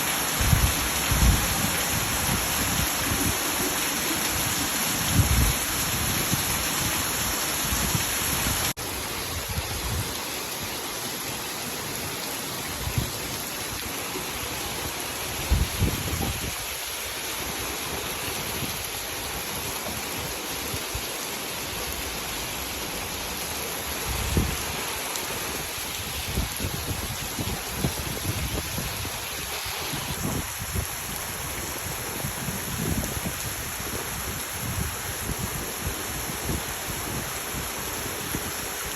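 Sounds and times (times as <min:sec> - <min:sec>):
heavy rain: 0:00.0 - 0:38.9
rushing runoff water: 0:00.0 - 0:38.9
wind buffeting microphone: 0:00.4 - 0:10.2, 0:15.4 - 0:16.7, 0:25.6 - 0:38.7.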